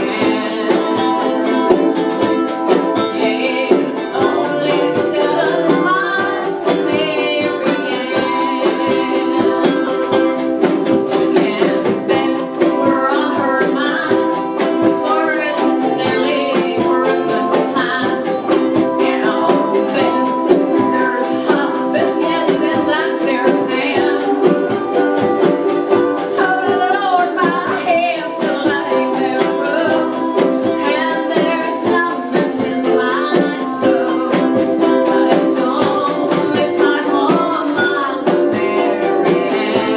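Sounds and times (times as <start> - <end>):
people singing: 0.0 - 39.9
strummed acoustic string instruments: 0.0 - 39.9.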